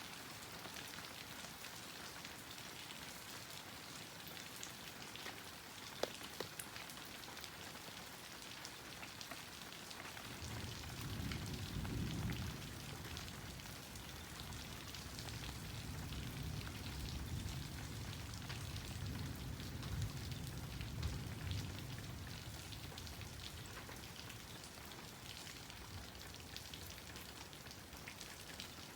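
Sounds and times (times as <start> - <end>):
rain on a plastic roof: 0.0 - 28.9
thunder rumbling: 10.4 - 23.4.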